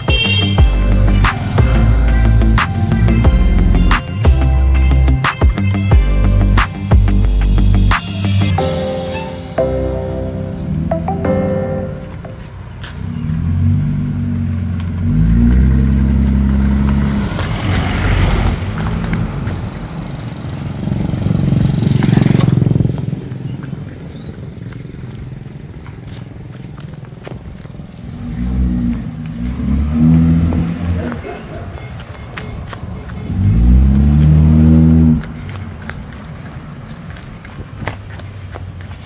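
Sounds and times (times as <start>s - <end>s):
car engine revving: 0.0s - 8.6s, 13.0s - 23.4s, 28.0s - 31.2s, 33.3s - 35.6s.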